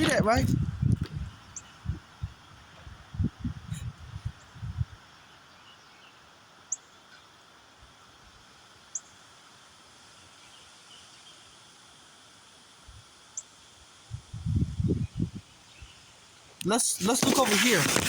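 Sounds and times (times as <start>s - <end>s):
wind buffeting microphone: 0.0s - 5.0s, 14.1s - 15.5s
faint wind noise: 0.0s - 6.0s, 13.8s - 18.0s.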